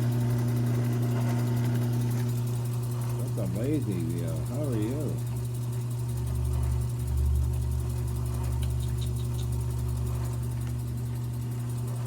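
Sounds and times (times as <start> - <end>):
lathe motor humming: 0.0 - 5.6
faint light ticks: 8.5 - 9.5.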